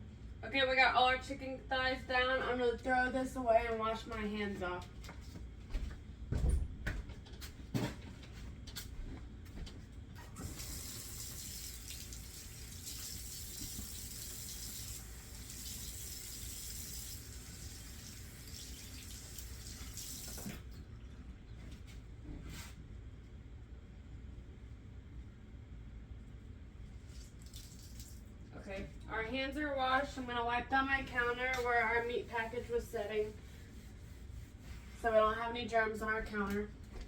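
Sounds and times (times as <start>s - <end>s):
faucet running water: 10.4s - 20.7s, 27.1s - 28.3s
hands washing under water: 27.0s - 28.2s.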